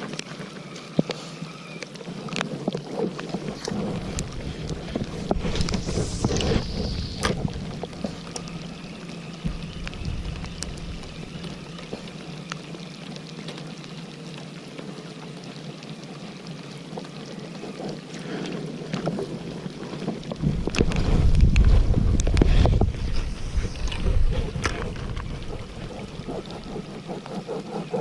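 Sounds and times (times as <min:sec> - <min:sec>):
wind buffeting microphone: 0:03.2 - 0:12.5, 0:20.4 - 0:28.0.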